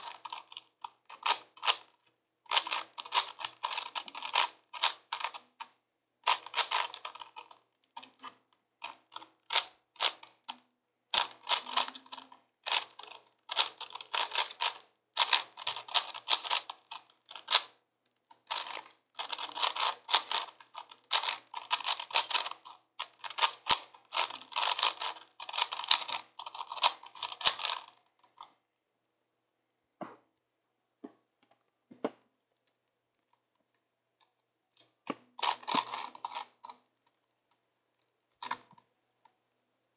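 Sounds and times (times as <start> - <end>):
puzzle cube plastic clicking: 0.0 - 27.9, 34.8 - 37.2.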